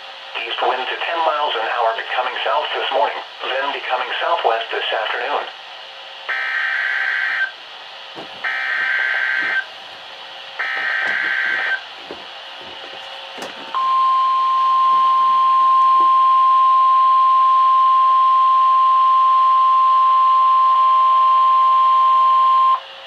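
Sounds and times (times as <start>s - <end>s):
steady warning alarm tone: 6.3s - 7.6s, 8.3s - 22.8s.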